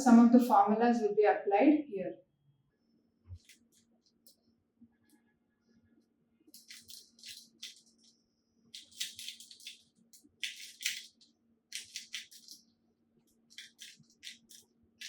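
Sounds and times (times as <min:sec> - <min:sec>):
puzzle cube clicking and rattling: 0:06.5 - 0:08.1, 0:08.7 - 0:12.6, 0:13.3 - 0:14.6.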